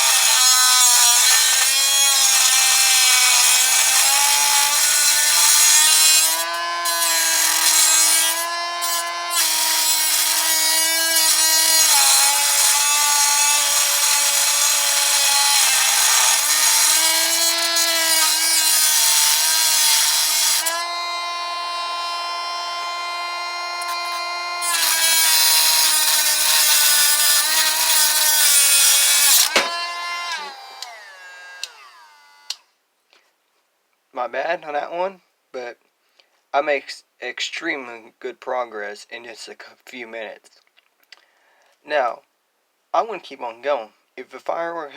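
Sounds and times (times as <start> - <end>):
metal grinding: 0.0 - 22.1, 23.7 - 32.1
rotary tool whining: 0.0 - 32.6.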